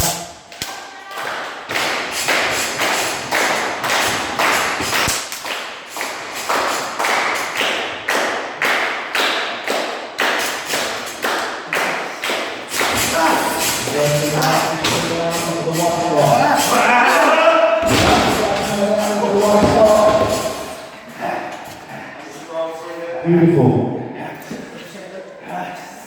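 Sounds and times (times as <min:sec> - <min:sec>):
audience clapping in unison: 0:00.6 - 0:13.0.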